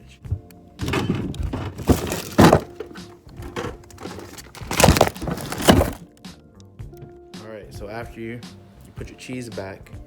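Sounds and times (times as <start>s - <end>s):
refrigerator thuds and knocks: 0.3s - 6.0s
bag rustling: 0.9s - 6.0s.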